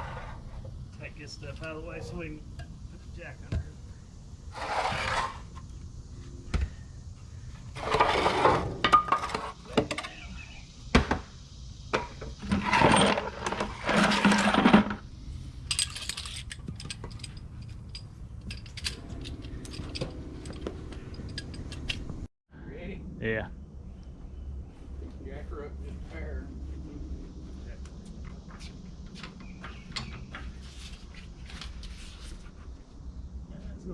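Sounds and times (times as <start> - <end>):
metal parts scraping and shuffling: 7.8 - 9.6, 12.4 - 15.0, 15.7 - 22.3
small metallic clinks: 15.6 - 22.1.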